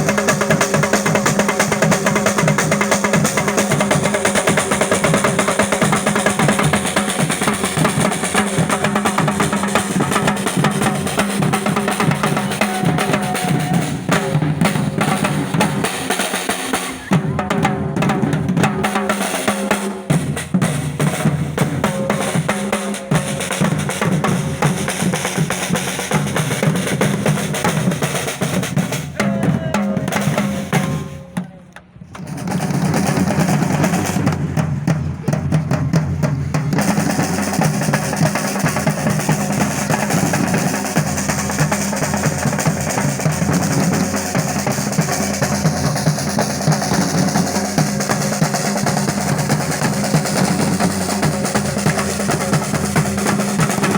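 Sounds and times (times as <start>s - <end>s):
music with busy drum beat: 0.0s - 53.9s.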